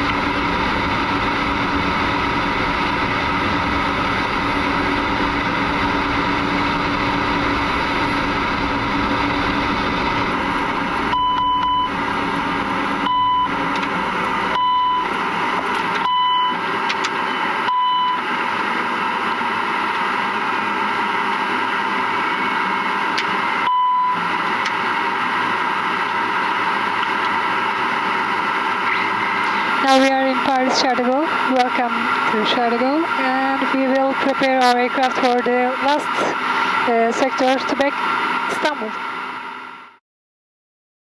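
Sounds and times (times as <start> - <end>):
low rumble: 0.0 - 15.9
steady rush of air: 0.0 - 15.9, 28.4 - 32.4, 36.1 - 37.0.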